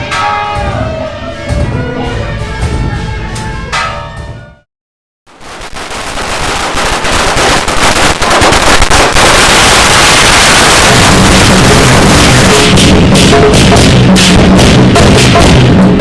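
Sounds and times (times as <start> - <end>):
firecrackers crackling: 5.3 - 15.7.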